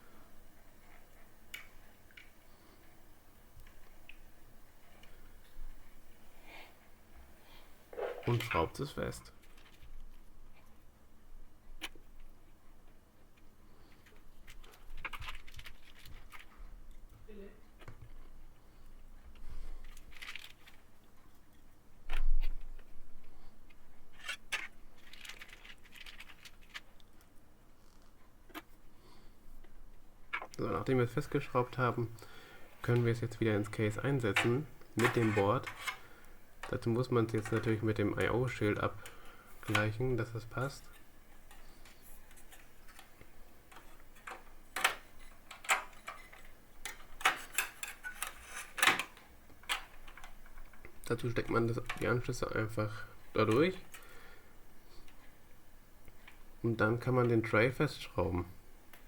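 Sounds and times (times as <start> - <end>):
small clicks and scratching: 9.3 - 10.8, 11.8 - 17.1, 19.3 - 28.8, 40.9 - 51.1.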